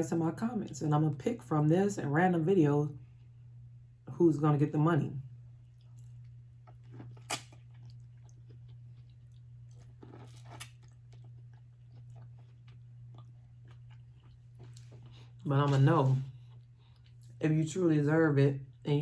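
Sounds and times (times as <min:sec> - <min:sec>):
steady low hum: 0:00.0 - 0:19.0
person chewing: 0:05.6 - 0:17.4.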